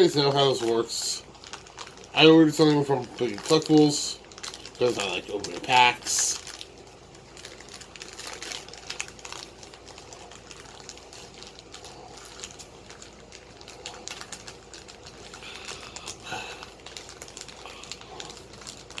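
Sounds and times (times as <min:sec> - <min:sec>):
plastic and card packaging crinkling: 0:00.0 - 0:19.0.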